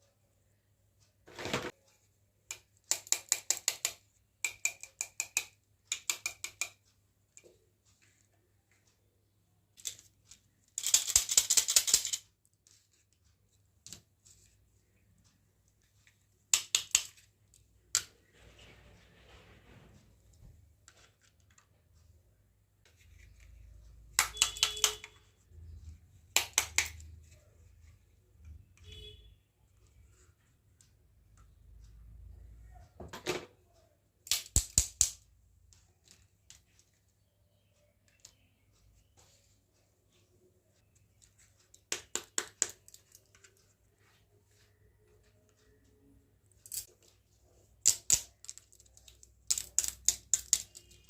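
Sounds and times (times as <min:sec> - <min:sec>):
plastic toy pieces clicking: 0:02.5 - 0:06.8, 0:09.7 - 0:12.4, 0:16.5 - 0:18.2, 0:24.1 - 0:25.3, 0:26.3 - 0:27.2, 0:34.2 - 0:35.2, 0:47.8 - 0:51.0.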